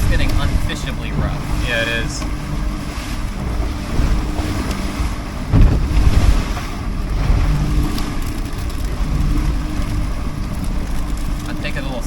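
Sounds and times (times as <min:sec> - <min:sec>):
wind buffeting microphone: 0:00.0 - 0:11.8
rough seas sloshing: 0:00.0 - 0:12.0
low thump: 0:05.5 - 0:06.6.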